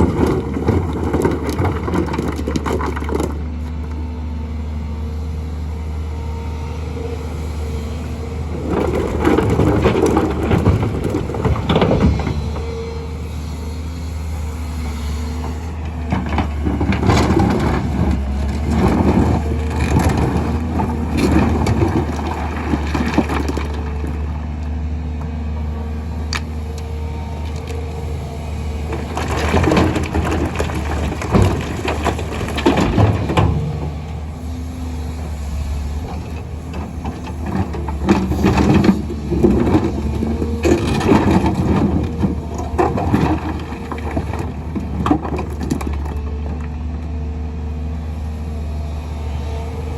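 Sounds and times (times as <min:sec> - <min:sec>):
rocks clattering into truck bed: 0:00.0 - 0:03.4, 0:08.6 - 0:12.6, 0:28.9 - 0:34.0, 0:37.0 - 0:46.2
excavator engine drone: 0:00.0 - 0:49.9.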